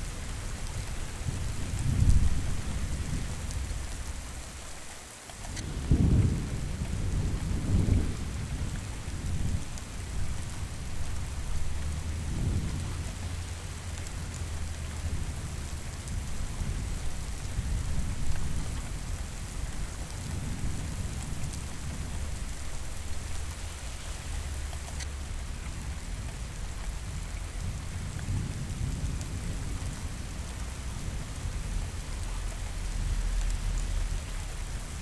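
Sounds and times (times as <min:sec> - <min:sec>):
steady rain: 0:00.0 - 0:35.0
rolling thunder: 0:05.6 - 0:13.6.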